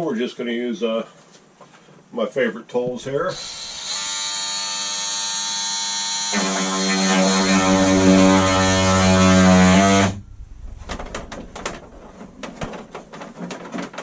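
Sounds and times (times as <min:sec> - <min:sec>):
power tool motor buzzing: 0:03.3 - 0:10.2
light clicks and rattles: 0:10.6 - 0:14.0.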